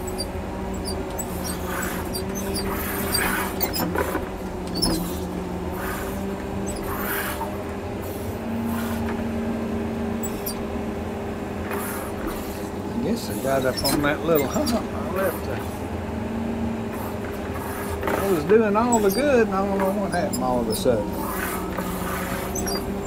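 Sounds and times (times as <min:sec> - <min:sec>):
short high squeaks: 0:00.0 - 0:07.6, 0:10.2 - 0:10.7, 0:13.3 - 0:15.5, 0:17.0 - 0:23.0
diesel engine running under load: 0:00.0 - 0:23.0.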